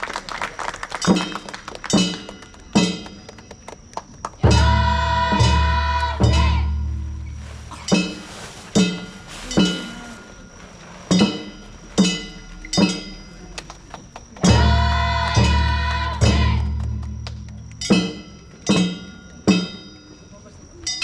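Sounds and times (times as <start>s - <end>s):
metallic percussion strikes ringing: 1.0s - 3.2s, 11.1s - 13.6s, 14.4s - 21.0s.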